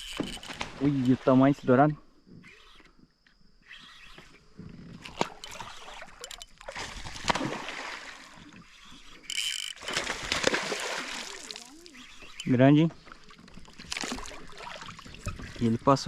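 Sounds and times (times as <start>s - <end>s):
water splashing and sloshing: 5.0s - 16.0s.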